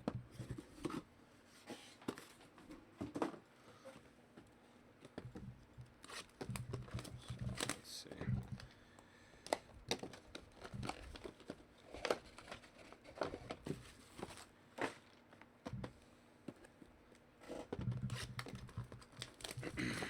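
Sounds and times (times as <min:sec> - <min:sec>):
packaging crinkling and tearing: 0:06.0 - 0:08.7, 0:09.4 - 0:15.2, 0:18.0 - 0:20.0.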